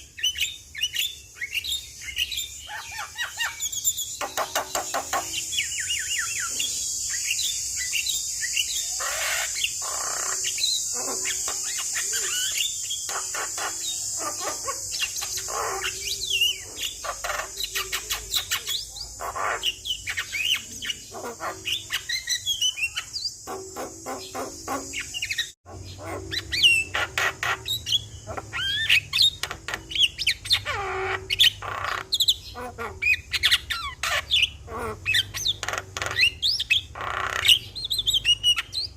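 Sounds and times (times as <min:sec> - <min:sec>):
myna bird chattering song: 0:00.0 - 0:38.9.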